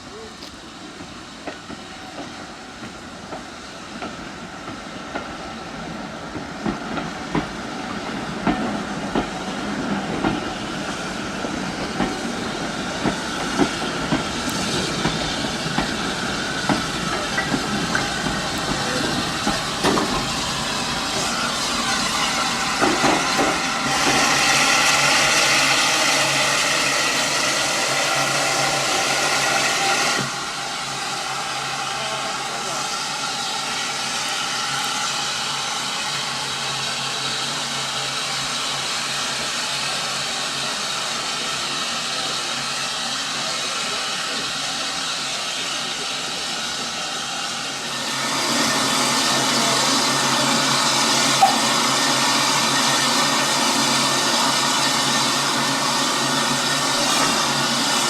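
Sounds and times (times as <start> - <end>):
locomotive steam hiss: 0.0 - 58.0
train wheels clicking: 6.3 - 30.4.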